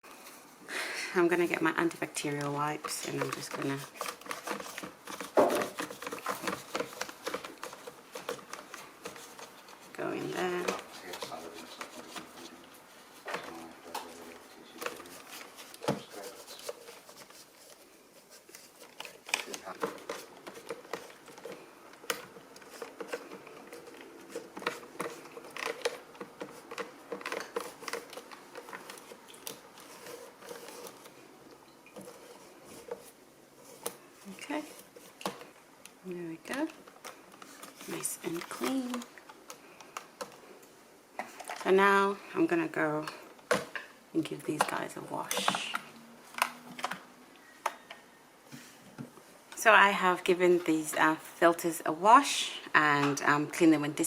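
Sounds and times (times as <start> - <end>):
plastic packet rustling: 1.3 - 40.6
wet wipe rubbing plastic: 1.5 - 21.7
plastic parts clicking and knocking: 18.9 - 31.1.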